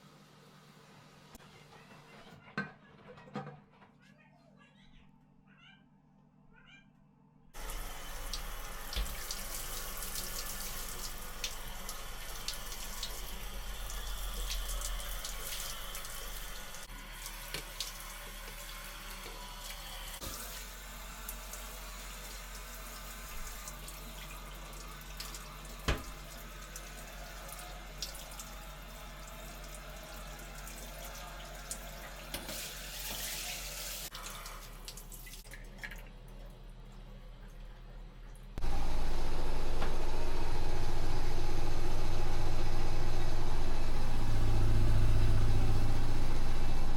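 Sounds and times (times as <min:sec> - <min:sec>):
water running into sink: 0:07.6 - 0:36.3.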